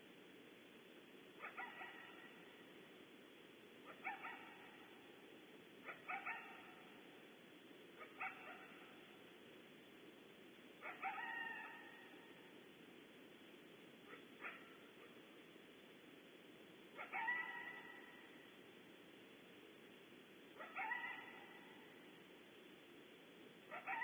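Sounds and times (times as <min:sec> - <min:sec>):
steady low hiss: 0:00.0 - 0:24.0
faint coyote barking: 0:01.4 - 0:02.7, 0:03.8 - 0:05.2, 0:05.8 - 0:09.2, 0:10.8 - 0:12.6, 0:14.0 - 0:15.5, 0:16.9 - 0:18.6, 0:20.5 - 0:22.3, 0:23.6 - 0:24.0.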